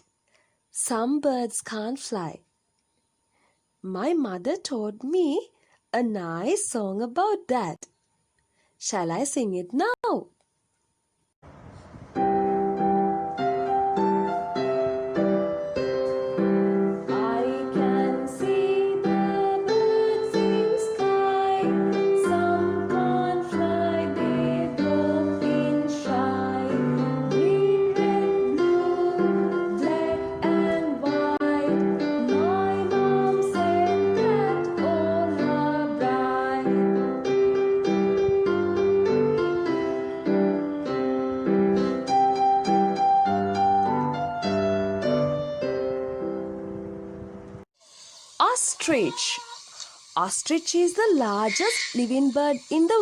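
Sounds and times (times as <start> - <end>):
piano chords: 11.4 - 47.6
children's song music: 12.2 - 47.2.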